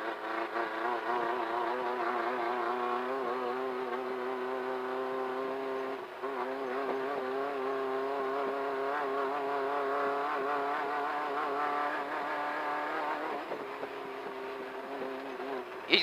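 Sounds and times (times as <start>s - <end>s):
race car engine revving high: 0.0s - 16.0s.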